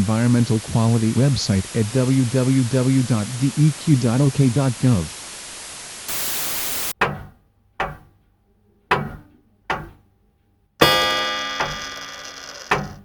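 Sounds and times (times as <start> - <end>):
radio static hiss: 0.0 - 7.0
white noise burst: 0.0 - 7.0.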